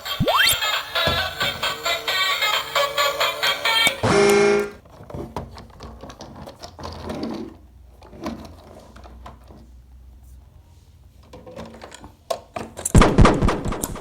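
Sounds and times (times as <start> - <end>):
loud pitched tone: 0.0 - 2.2
electronic music: 0.0 - 4.0.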